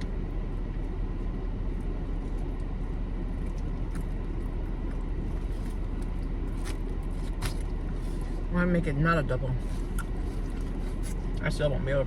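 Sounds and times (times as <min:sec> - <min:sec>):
car rumble inside cabin: 0:00.0 - 0:12.0.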